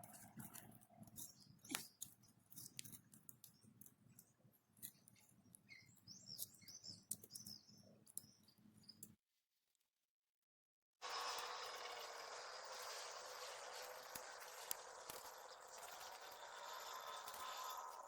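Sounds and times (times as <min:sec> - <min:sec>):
small birds chirping: 0:00.0 - 0:09.2, 0:11.9 - 0:18.0
sharp clicks and ticks: 0:11.0 - 0:18.0.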